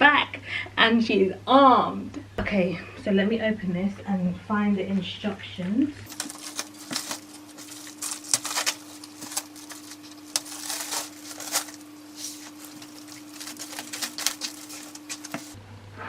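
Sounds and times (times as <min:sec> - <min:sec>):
faint steady hum: 0:00.0 - 0:16.0
packaging rustling and crinkling: 0:06.1 - 0:15.6.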